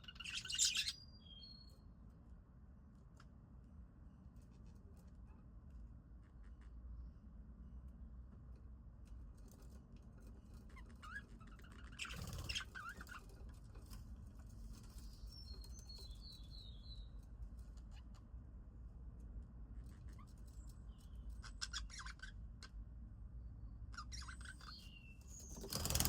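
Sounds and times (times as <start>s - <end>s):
budgerigars chirping: 0.0s - 1.4s, 11.0s - 13.2s, 21.0s - 22.7s, 23.9s - 26.0s.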